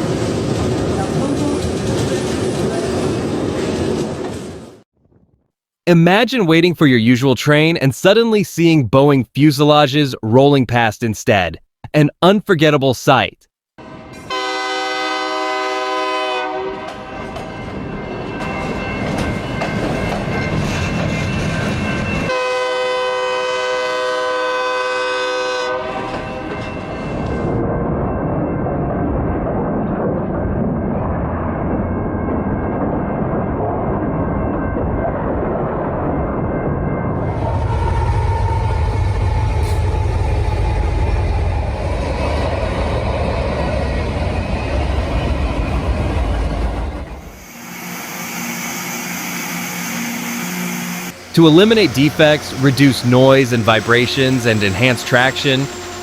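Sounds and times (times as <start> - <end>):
freight train rumbling past: 0.0 - 4.8, 13.8 - 56.0
train air horn blast: 14.2 - 17.2, 22.3 - 26.1, 47.4 - 56.0.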